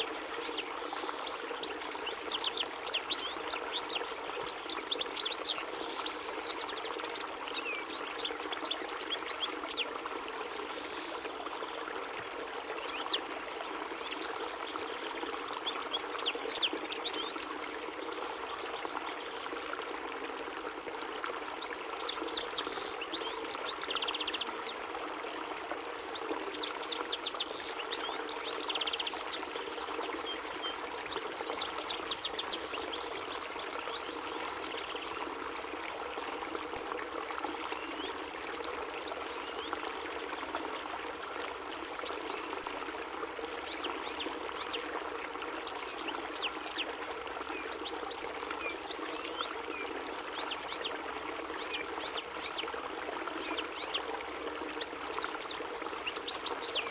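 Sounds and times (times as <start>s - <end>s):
goldfinch twittering song: 0.4s - 9.9s, 15.4s - 17.9s, 21.7s - 24.8s, 26.2s - 35.3s, 54.8s - 56.9s.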